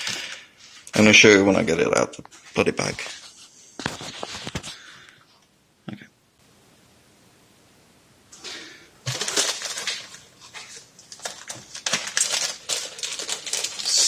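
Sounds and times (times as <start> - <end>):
rustling handling noise: 0.0 - 5.0, 8.4 - 14.0.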